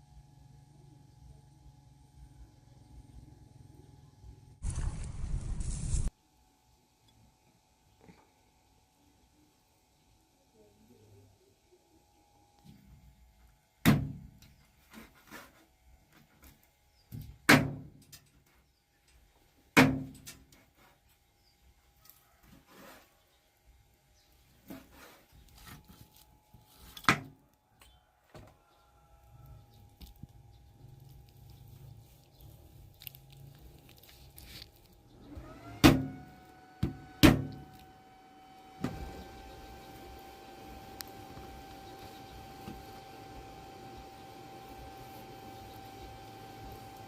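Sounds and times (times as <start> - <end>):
motor whining: 35.0 - 47.0.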